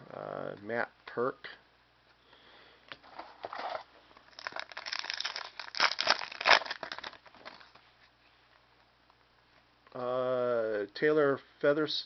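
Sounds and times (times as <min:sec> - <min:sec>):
foil wrapper crinkling and tearing: 0:03.5 - 0:07.8.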